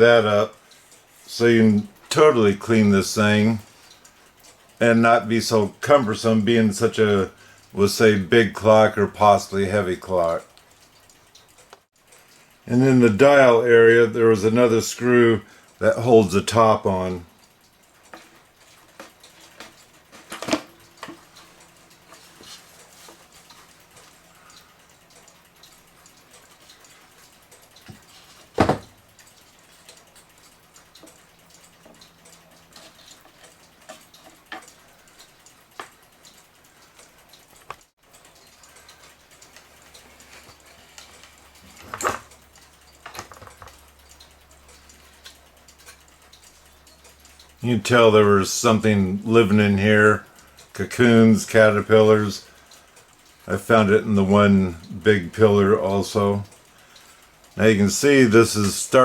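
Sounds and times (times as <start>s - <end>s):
clock case clicks and knocks: 28.6s - 28.9s.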